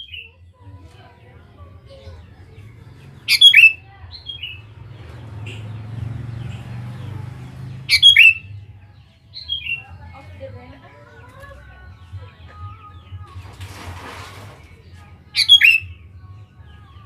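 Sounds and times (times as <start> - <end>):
bird calling: 3.2 - 4.6, 7.9 - 8.5, 15.4 - 15.9.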